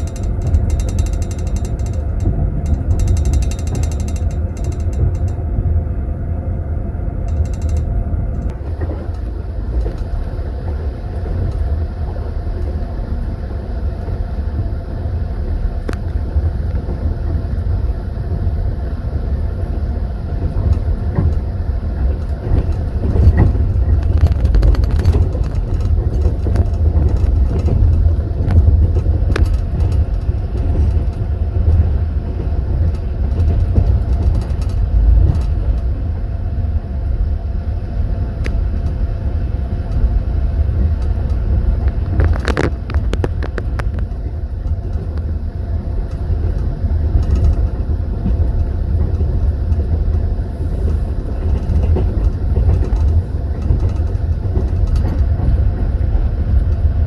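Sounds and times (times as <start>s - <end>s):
train carriage rumbling on rails: 0.0s - 57.0s.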